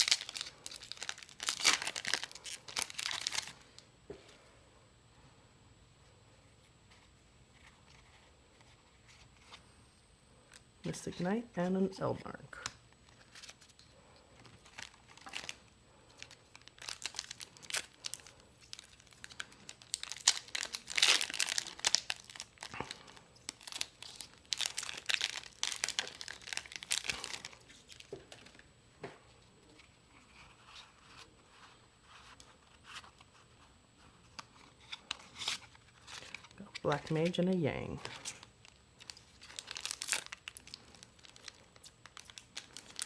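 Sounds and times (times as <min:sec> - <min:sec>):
wrapper crinkling and tearing: 0:00.0 - 0:03.8, 0:12.6 - 0:28.6, 0:34.4 - 0:43.0.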